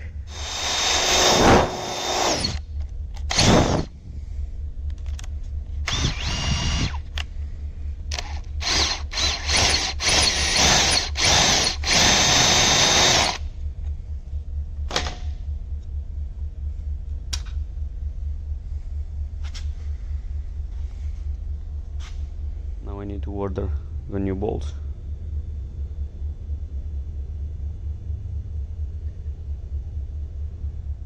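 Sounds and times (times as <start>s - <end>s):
power drill running: 0.3s - 2.6s, 3.3s - 3.9s, 5.9s - 7.0s, 8.1s - 13.4s.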